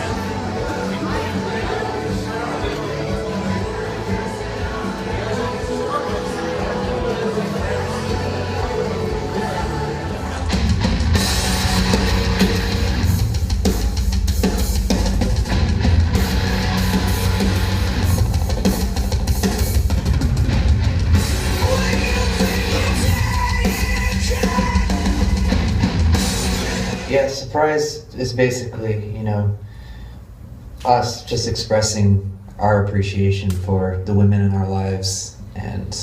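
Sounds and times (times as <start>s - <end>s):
rock band playing live: 0.0s - 27.1s.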